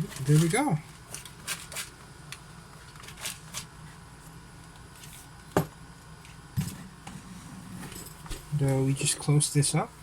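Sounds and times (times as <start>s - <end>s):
rustling of packing accessories: 0.0s - 2.0s.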